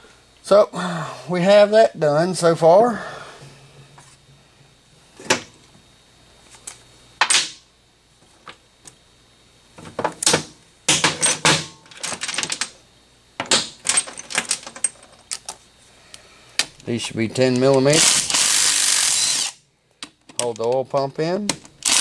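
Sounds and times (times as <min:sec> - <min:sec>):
metal tools clinking: 0:10.9 - 0:12.7, 0:13.5 - 0:15.5.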